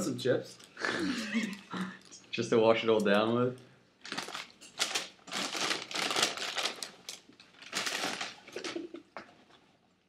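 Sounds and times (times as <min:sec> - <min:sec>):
paper packaging crinkling: 0:04.0 - 0:09.0.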